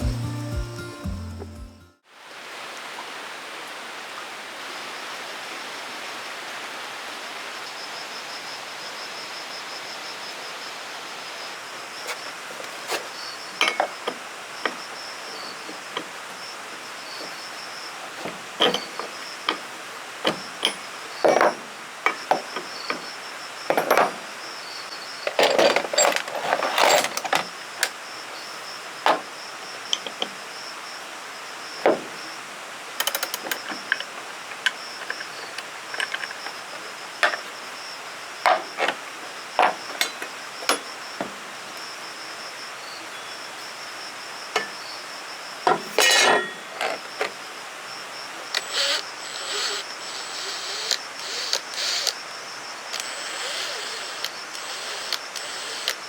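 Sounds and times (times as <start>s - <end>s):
insects trilling: 4.7s - 56.0s
knocks and clinks of handling: 13.6s - 14.2s, 23.7s - 24.3s, 45.7s - 47.0s.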